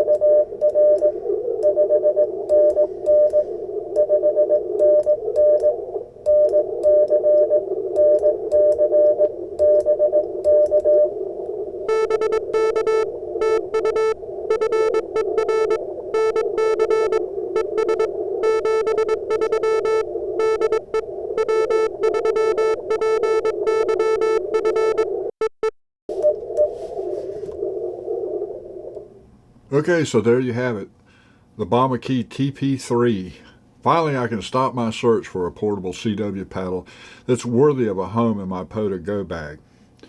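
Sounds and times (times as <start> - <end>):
receiver hiss: 0.0 - 25.3, 26.1 - 35.2
morse code tones: 11.9 - 25.8.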